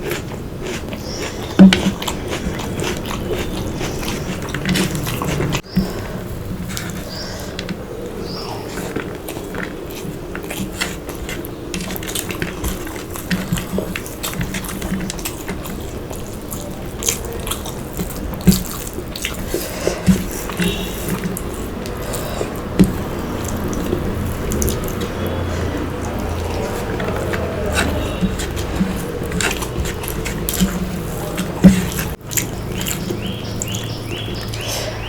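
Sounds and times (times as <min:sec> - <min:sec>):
wet chewing: 0:00.0 - 0:35.0
lip smacks: 0:08.3 - 0:35.0
mouth clicks: 0:10.6 - 0:35.0.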